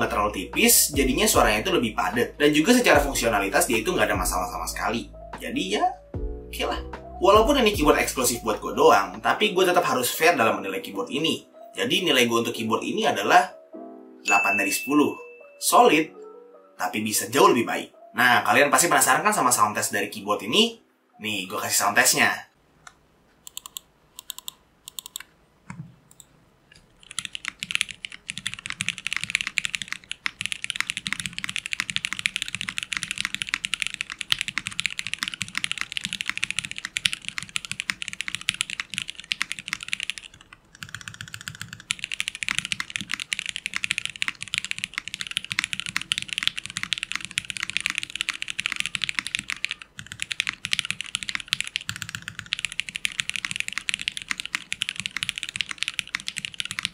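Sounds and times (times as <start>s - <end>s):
mechanical keyboard typing: 23.5s - 25.3s, 27.0s - 56.9s.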